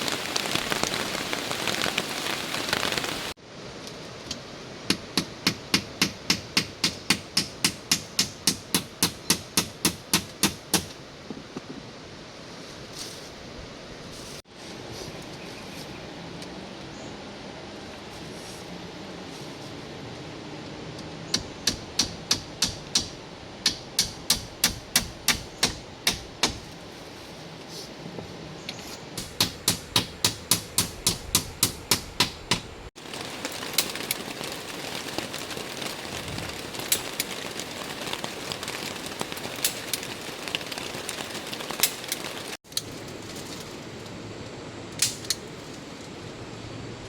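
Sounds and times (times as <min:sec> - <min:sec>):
steady hiss: 0:00.0 - 0:11.2
tool striking wood: 0:21.4 - 0:26.7, 0:29.2 - 0:32.7.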